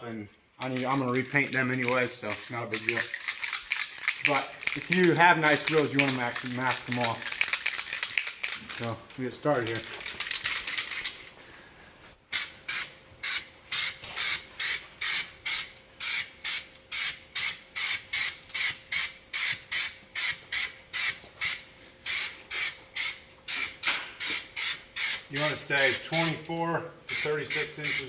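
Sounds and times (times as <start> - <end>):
short bursts of spray: 12.3 - 26.4, 27.1 - 28.0
spray gun hissing: 27.1 - 28.0.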